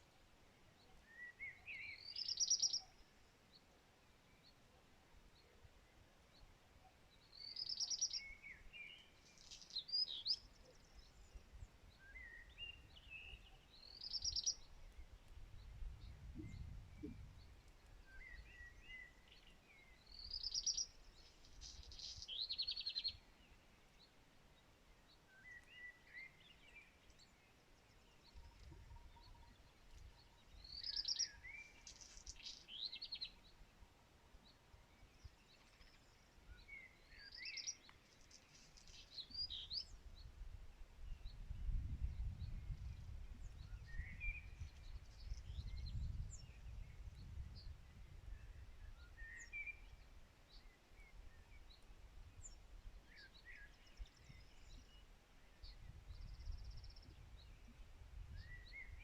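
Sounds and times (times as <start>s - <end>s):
soft bird twittering: 0.8s - 3.1s, 6.8s - 23.6s, 25.3s - 33.6s, 35.0s - 40.0s, 41.2s - 51.8s
songbird trilling: 1.1s - 3.0s.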